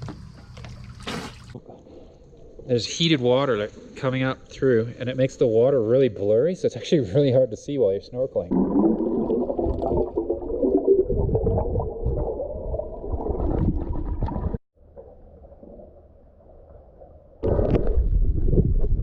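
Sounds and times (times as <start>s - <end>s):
water churning underwater: 8.4s - 19.0s.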